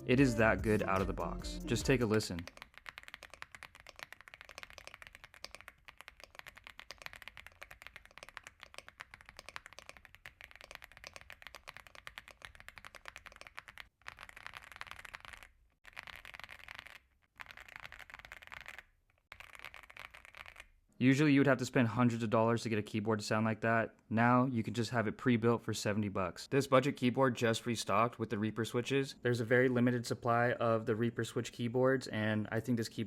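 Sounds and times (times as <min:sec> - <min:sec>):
fast typing on mechanical keyboard: 0:02.0 - 0:20.8.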